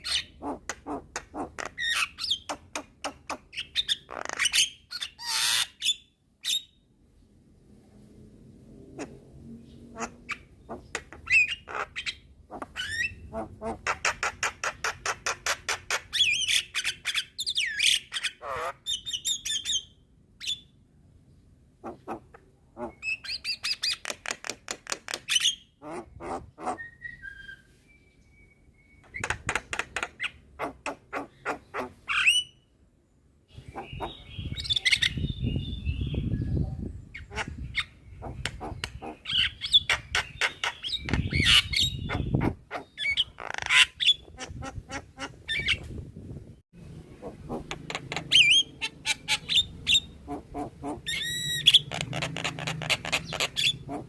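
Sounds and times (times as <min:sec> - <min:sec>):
myna chattering and squawking: 0:00.0 - 0:05.8, 0:09.9 - 0:17.2, 0:21.8 - 0:26.8, 0:29.2 - 0:32.4, 0:33.6 - 0:35.3, 0:37.2 - 0:46.0, 0:47.0 - 0:54.0.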